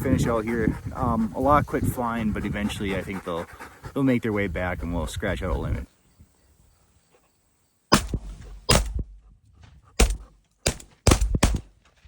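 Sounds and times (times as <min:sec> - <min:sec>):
shotgun shots: 0:07.9 - 0:09.0, 0:10.0 - 0:11.7.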